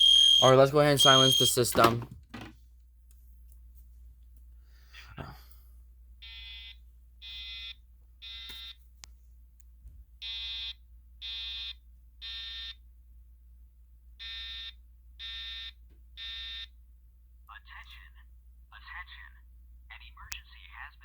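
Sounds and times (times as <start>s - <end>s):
alarm horn blasts: 0.0s - 1.9s.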